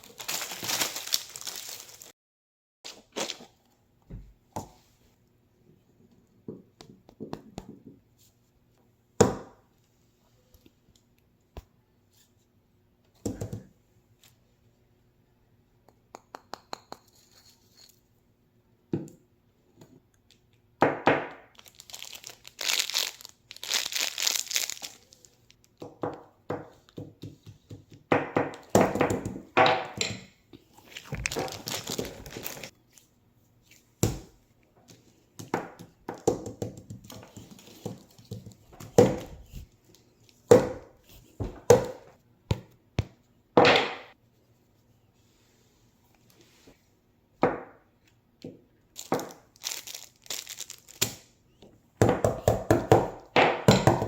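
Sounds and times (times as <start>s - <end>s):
crinkling and rustling: 0.0s - 2.1s, 21.5s - 25.8s, 30.6s - 33.9s, 49.0s - 51.1s.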